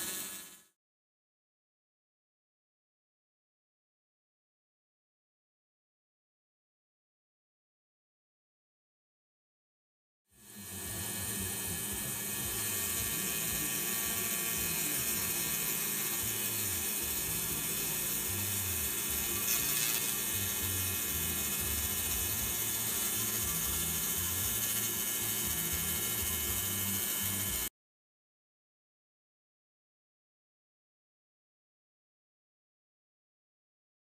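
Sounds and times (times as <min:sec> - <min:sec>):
laser cleaning machine hiss: 0:00.0 - 0:00.6, 0:10.4 - 0:27.7.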